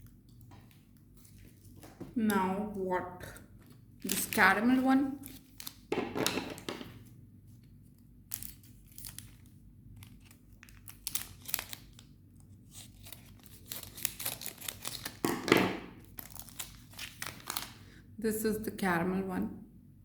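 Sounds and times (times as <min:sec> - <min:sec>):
wrapper tearing and crinkling: 0:04.0 - 0:06.7, 0:08.2 - 0:17.8.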